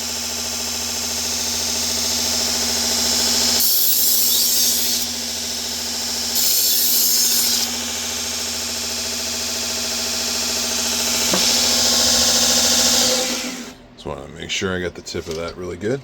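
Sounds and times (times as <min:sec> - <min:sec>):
belt grinder motor humming: 0:00.0 - 0:13.8.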